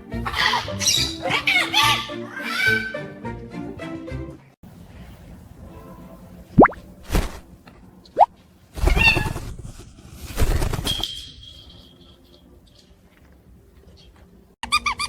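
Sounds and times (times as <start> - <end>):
parrot wings flapping: 7.1 - 7.4, 8.8 - 11.0.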